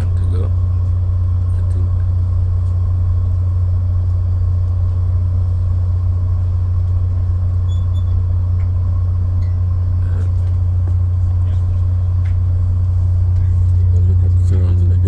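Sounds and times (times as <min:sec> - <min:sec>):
idling train low drone: 0:00.0 - 0:15.0.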